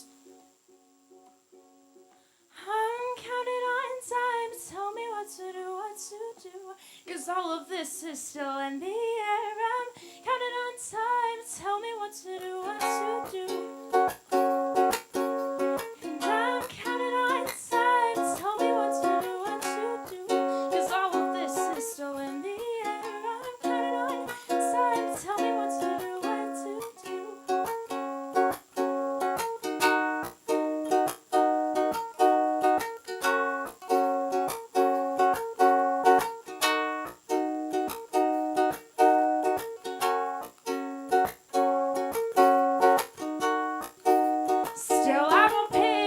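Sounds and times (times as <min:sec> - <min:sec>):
person singing without words: 0:02.5 - 0:14.2, 0:15.7 - 0:27.8, 0:44.5 - 0:46.0
strummed acoustic string instrument: 0:09.5 - 0:46.0.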